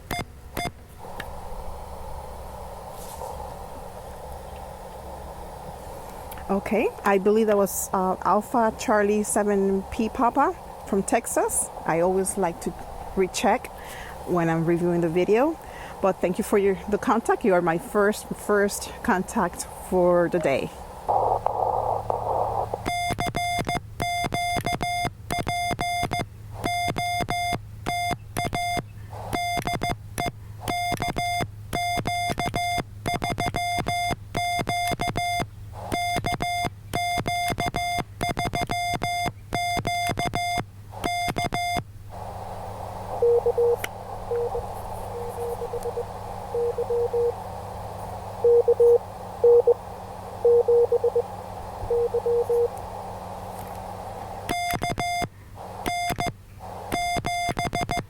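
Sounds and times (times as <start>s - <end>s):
radio receiver hiss: 0.6s - 23.1s, 29.1s - 29.5s, 35.8s - 36.6s, 40.9s - 57.7s
faint morse signal: 1.0s - 58.0s
morse code sidetone beeping: 21.1s - 42.3s, 43.0s - 47.4s, 48.4s - 51.3s, 51.9s - 52.8s, 54.5s - 56.3s, 56.9s - 58.0s.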